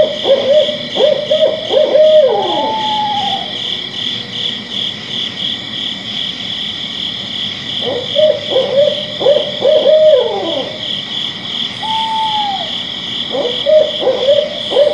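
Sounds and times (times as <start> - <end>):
night animal hooting: 0.0 - 4.7, 7.8 - 14.9
night insects chirring: 0.0 - 14.9.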